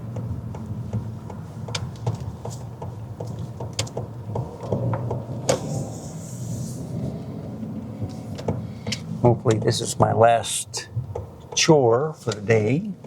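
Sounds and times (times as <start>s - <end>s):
car cabin hum: 0.0s - 13.0s
hiss: 5.5s - 6.8s.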